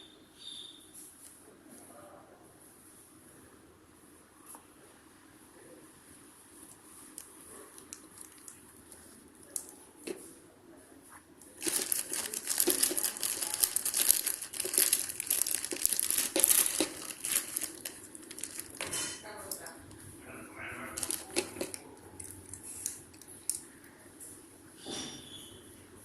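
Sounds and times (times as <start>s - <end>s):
snack wrappers crinkling: 7.1s - 9.8s, 11.5s - 20.0s, 20.8s - 23.7s.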